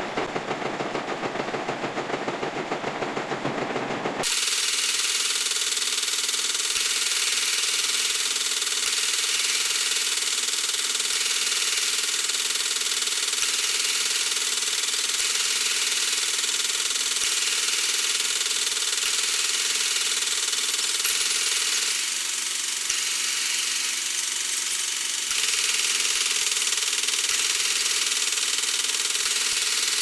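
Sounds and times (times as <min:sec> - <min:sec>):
metal lathe running: 0:22.8 - 0:26.7.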